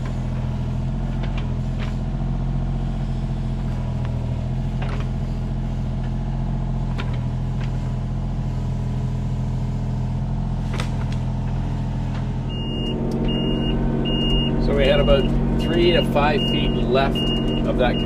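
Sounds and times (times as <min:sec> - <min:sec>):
excavator diesel engine running: 0:00.0 - 0:18.0
high warning beep: 0:12.5 - 0:18.0.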